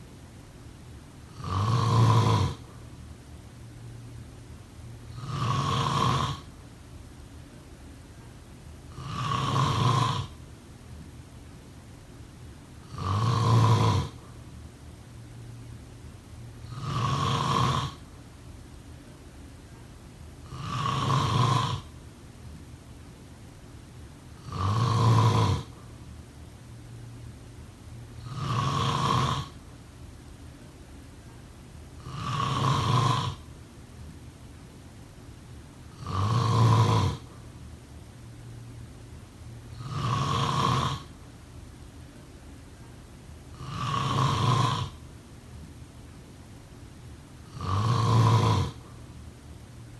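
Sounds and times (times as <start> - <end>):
person snoring: 1.3 - 2.7, 5.1 - 6.5, 8.9 - 10.4, 12.8 - 14.3, 16.6 - 18.0, 20.4 - 22.0, 24.4 - 25.8, 28.2 - 29.6, 32.0 - 33.5, 35.9 - 37.4, 39.7 - 41.1, 43.5 - 45.0, 47.5 - 48.9.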